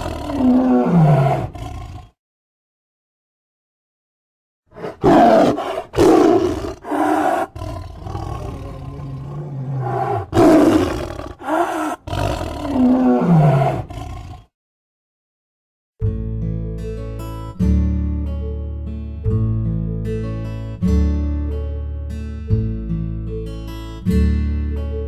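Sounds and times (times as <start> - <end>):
tiger growling and snarling: 0.0 - 2.2, 4.8 - 14.5.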